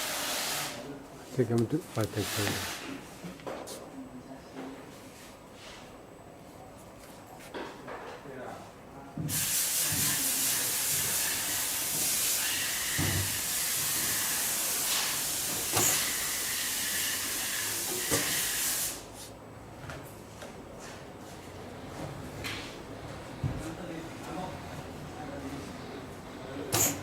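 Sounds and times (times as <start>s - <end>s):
loud steady hiss: 0.0s - 1.0s, 9.3s - 19.3s.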